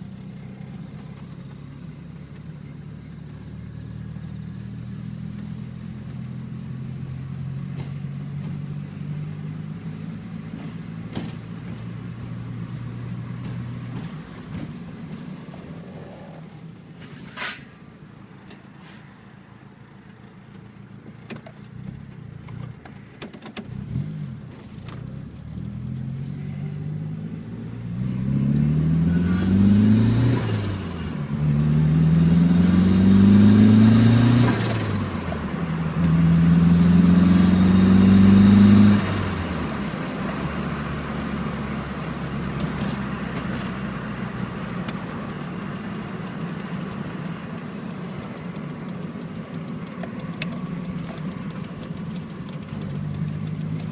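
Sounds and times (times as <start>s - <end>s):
car engine revving: 23.6s - 53.9s
car engine idling: 39.1s - 53.9s.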